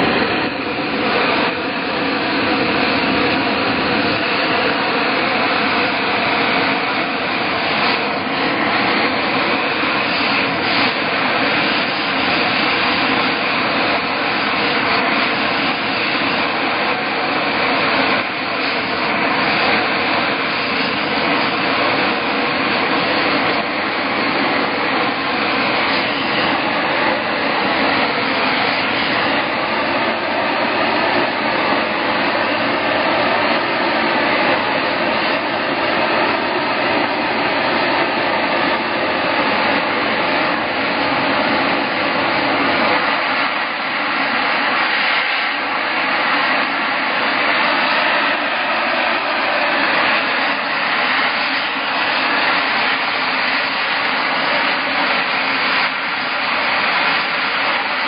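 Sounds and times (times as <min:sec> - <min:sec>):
machine rushing noise: 0:00.0 - 0:58.0.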